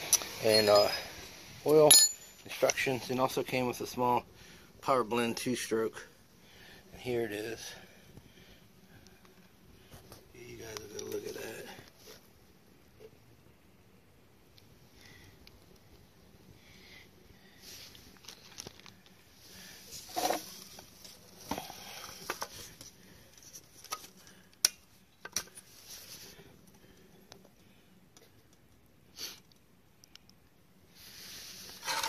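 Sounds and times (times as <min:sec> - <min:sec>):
packaging rustling: 0:18.1 - 0:19.2.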